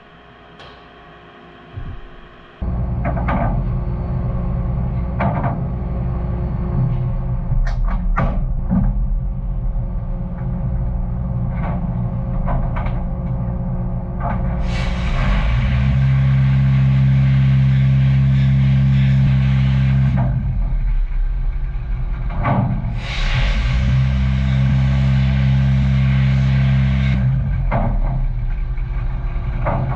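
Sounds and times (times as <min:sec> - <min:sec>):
machinery humming: 0:00.0 - 0:29.9
loud hiss with deep hum: 0:13.4 - 0:29.9.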